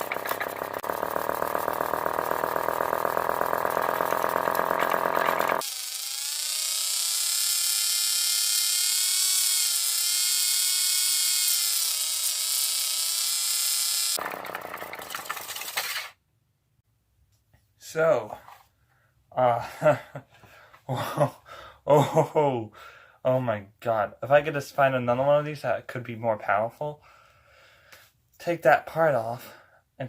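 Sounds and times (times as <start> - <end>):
small electric motor whining: 0.0 - 16.1.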